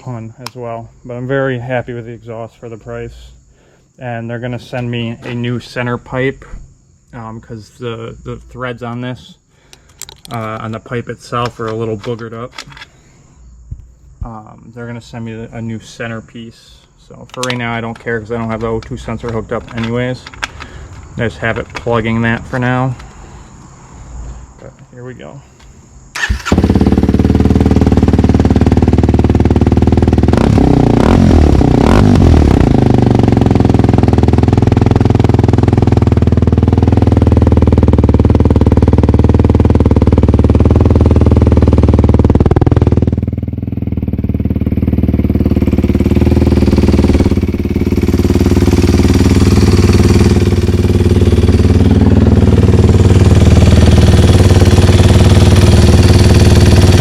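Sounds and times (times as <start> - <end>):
motorcycle engine revving and idling: 17.1 - 23.4, 26.2 - 57.0.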